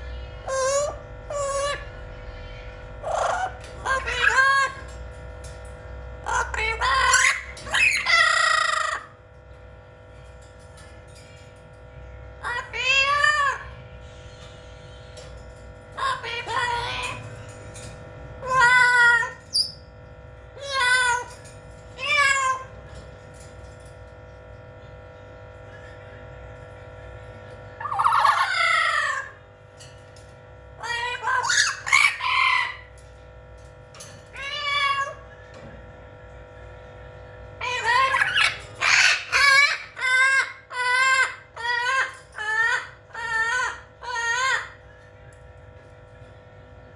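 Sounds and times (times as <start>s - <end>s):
parrot loud drawn-out calls: 6.3s - 9.1s, 27.8s - 29.4s, 30.8s - 32.9s, 37.6s - 44.8s.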